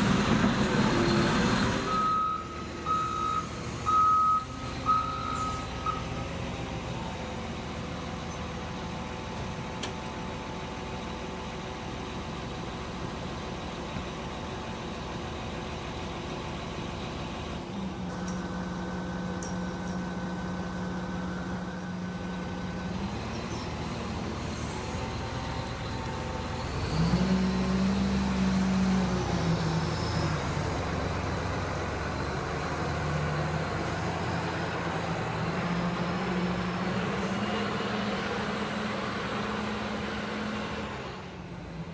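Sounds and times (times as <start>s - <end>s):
heavy machinery engines running: 0.0s - 41.9s
reversing alarm beeping: 1.8s - 6.2s
engine revving: 22.8s - 41.4s.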